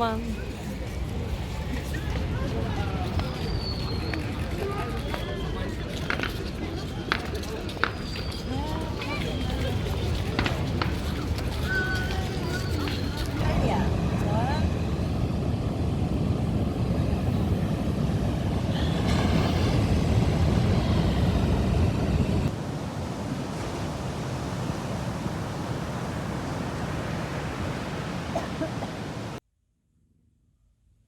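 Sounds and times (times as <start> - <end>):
wind buffeting microphone: 0.0 - 29.4
ocean surf: 5.4 - 29.4.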